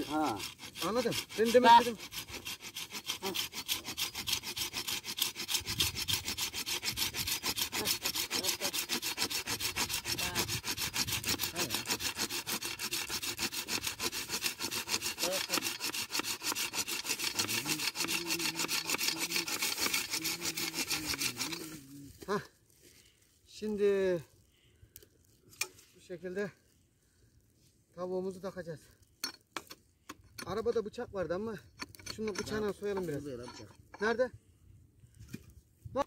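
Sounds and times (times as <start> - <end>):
hand saw cutting wood: 0.0 - 22.4, 31.8 - 34.2.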